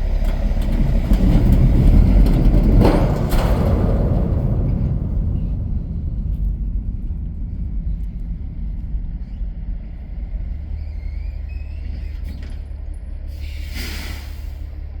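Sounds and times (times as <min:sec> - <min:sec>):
truck engine rumbling: 0:00.0 - 0:15.0
faint high squeal: 0:10.5 - 0:12.7
air hiss: 0:13.3 - 0:14.8.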